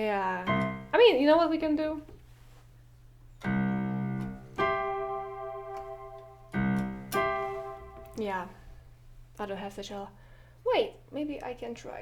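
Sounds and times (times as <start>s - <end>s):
piano chords: 0.0s - 1.9s, 3.4s - 8.6s.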